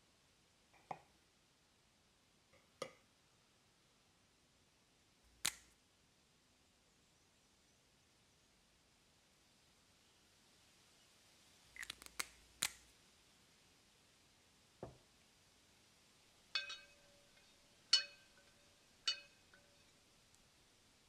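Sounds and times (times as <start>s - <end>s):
soft knock: 14.8s - 15.0s
glassware clinking: 16.6s - 19.9s.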